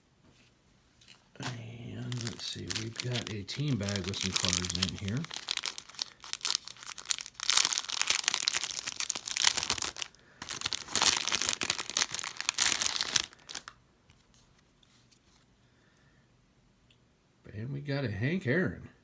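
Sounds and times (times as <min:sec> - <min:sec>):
plastic bag crinkling: 0:01.4 - 0:13.8.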